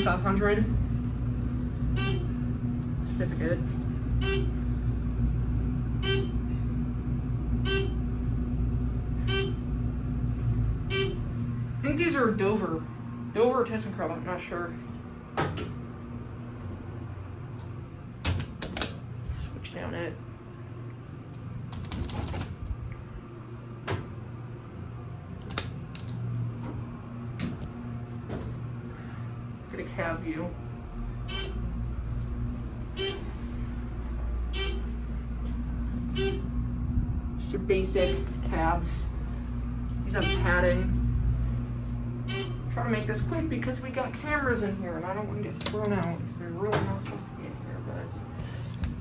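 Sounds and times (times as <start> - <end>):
steady low hum: 0.0 - 49.0
fire alarm blasts: 1.9 - 2.5, 4.2 - 5.0, 5.9 - 6.6, 7.4 - 8.1, 9.2 - 9.8, 10.7 - 11.4, 31.3 - 31.6, 42.2 - 42.7.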